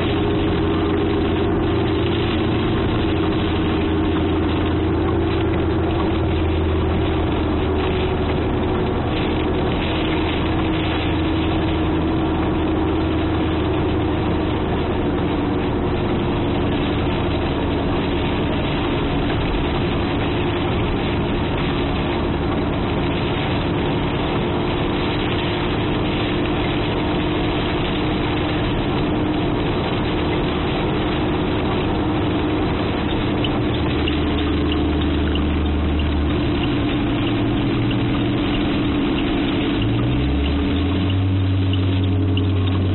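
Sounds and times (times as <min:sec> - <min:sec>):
car engine idling: 0:00.0 - 0:42.9
heavy rain on car roof: 0:00.0 - 0:42.9.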